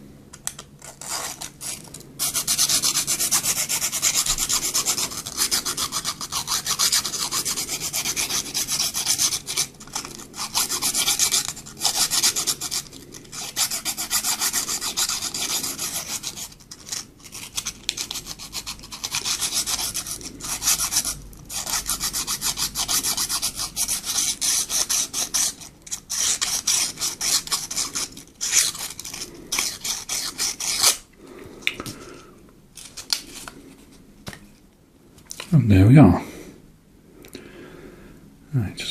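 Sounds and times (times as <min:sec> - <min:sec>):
hand file rasping: 0:00.8 - 0:31.0.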